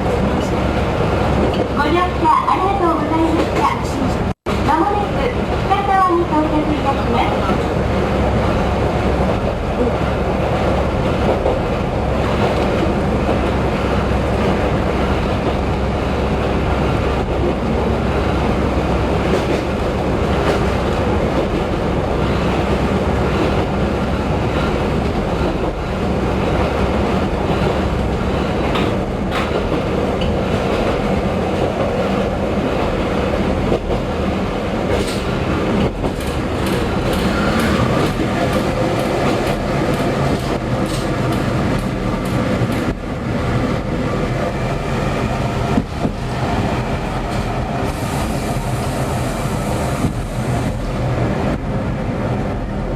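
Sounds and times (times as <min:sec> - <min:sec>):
train engine drone: 0:00.0 - 0:52.9
wheels rumbling on rails: 0:00.0 - 0:52.9
sharp rail clicks: 0:06.6 - 0:43.9.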